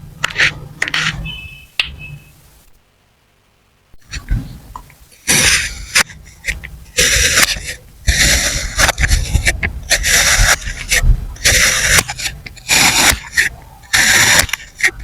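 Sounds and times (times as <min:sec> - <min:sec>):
blade slicing sand: 0:07.0 - 0:15.0.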